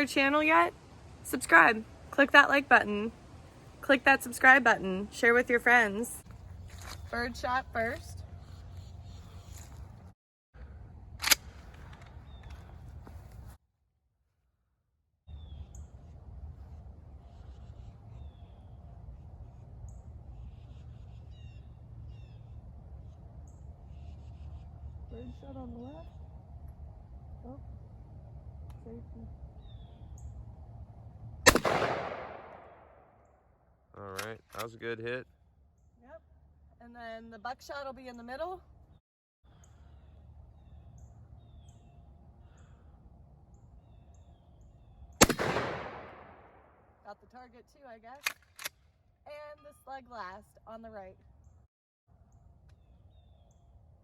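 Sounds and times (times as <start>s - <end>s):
birds chirping: 0.0s - 10.1s, 11.9s - 13.0s, 17.1s - 27.9s, 28.7s - 30.7s, 34.0s - 46.4s, 49.3s - 54.0s
faint low outdoor rumble: 0.0s - 13.6s, 15.3s - 54.0s
low background rumble: 15.3s - 33.1s
faint high bird chirps: 23.5s - 26.3s, 28.8s - 30.4s
wild birds calling: 39.5s - 45.4s.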